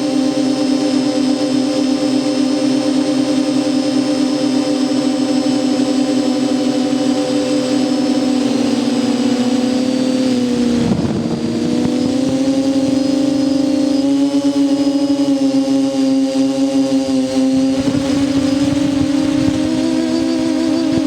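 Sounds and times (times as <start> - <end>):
electric motor hum and whine: 0.0 - 21.0
rush of noise: 7.3 - 21.0.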